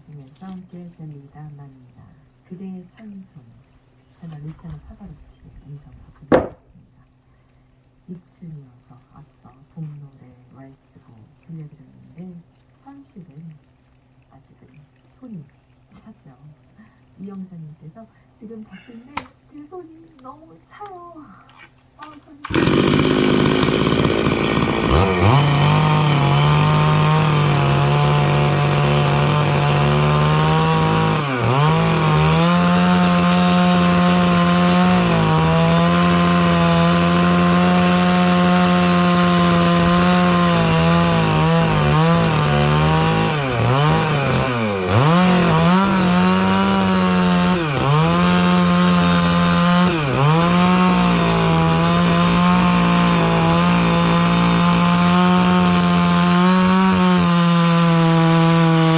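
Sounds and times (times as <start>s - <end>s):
chainsaw cutting log: 6.2s - 6.7s, 22.4s - 58.9s.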